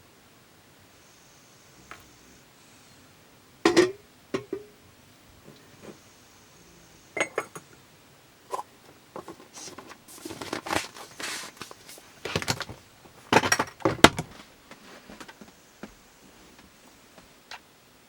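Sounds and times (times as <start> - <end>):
rustling: 9.2 - 13.3
short hissing noises: 9.4 - 12.2.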